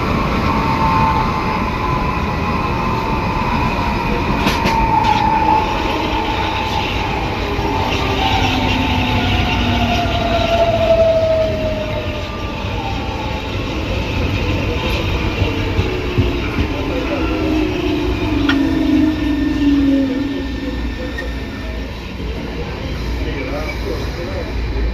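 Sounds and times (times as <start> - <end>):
train motor whine: 4.1 - 22.0.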